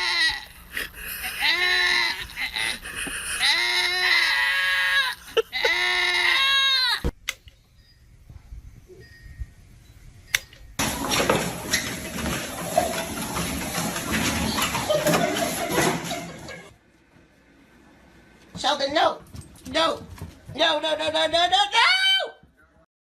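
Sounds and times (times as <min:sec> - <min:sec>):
animal crying: 0:00.0 - 0:07.1.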